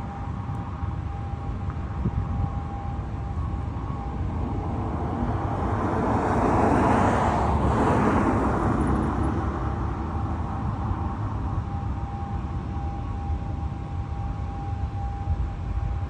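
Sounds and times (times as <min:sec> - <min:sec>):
vehicle passing by: 0:04.4 - 0:10.5.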